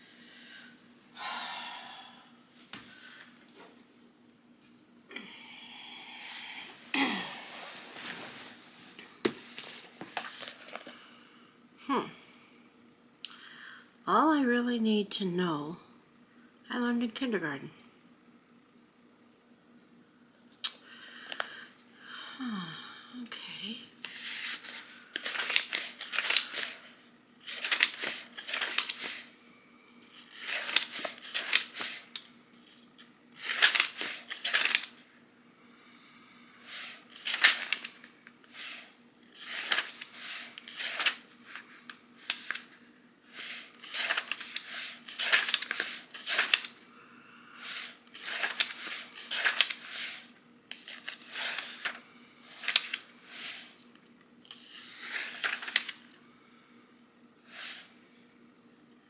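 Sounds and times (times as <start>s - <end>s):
book pages turning: 7.5s - 11.0s, 24.0s - 29.4s, 30.0s - 35.0s, 36.7s - 46.8s, 47.6s - 53.9s, 54.5s - 56.1s.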